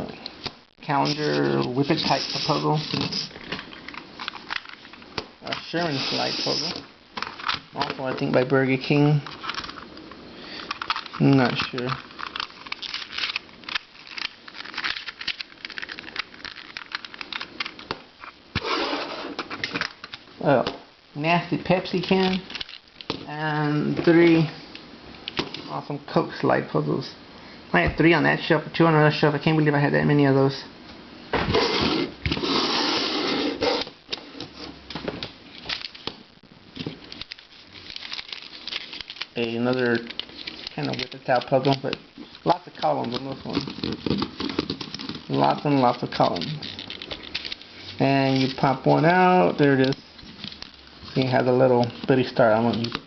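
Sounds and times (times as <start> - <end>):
plastic puzzles clicking and rustling: 1.0 - 18.3, 21.8 - 24.4, 35.5 - 36.2, 36.8 - 53.0.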